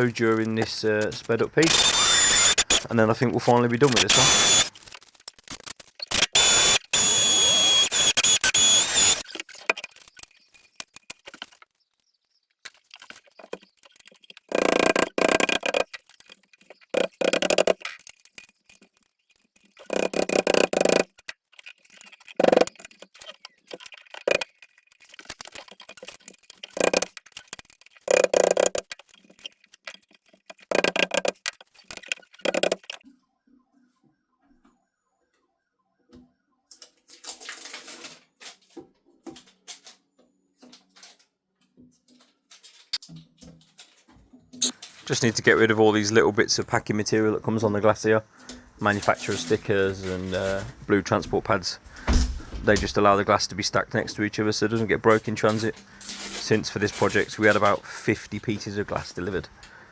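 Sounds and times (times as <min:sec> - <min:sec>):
loud noisy work: 0:00.0 - 0:04.8, 0:06.1 - 0:09.2
knocking and scraping: 0:12.7 - 0:33.1, 0:48.4 - 0:53.4.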